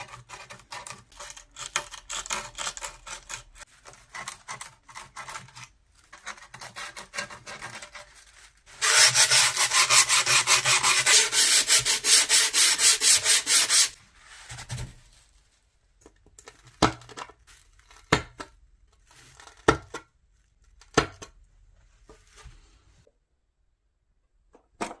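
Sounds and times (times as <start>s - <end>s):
handsaw rubbing grip tape: 8.7s - 14.0s.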